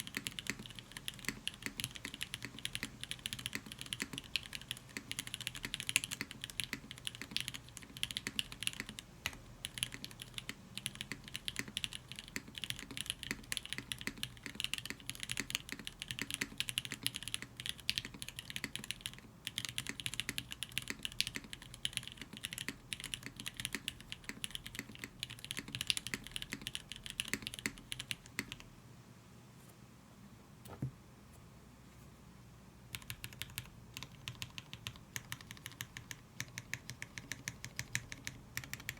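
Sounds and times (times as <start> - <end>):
mechanical keyboard typing: 0.0 - 28.6, 32.9 - 38.9.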